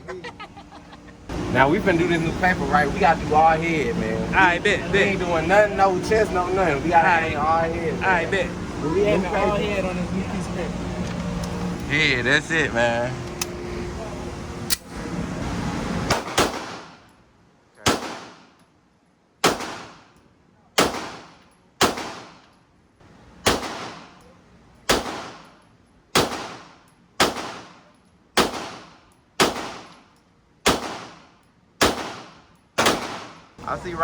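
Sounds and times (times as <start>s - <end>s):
gunshots with echo: 31.8s - 33.4s.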